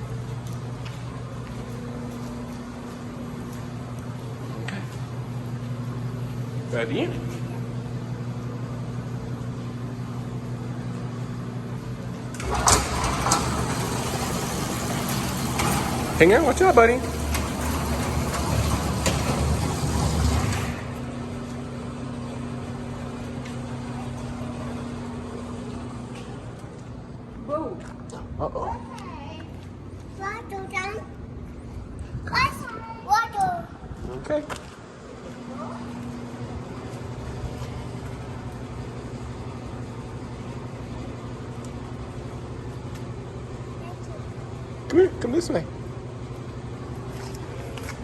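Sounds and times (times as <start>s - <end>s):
garage door opener motor hum: 0.0s - 27.4s, 34.3s - 48.0s
garage door rattling: 12.2s - 21.3s.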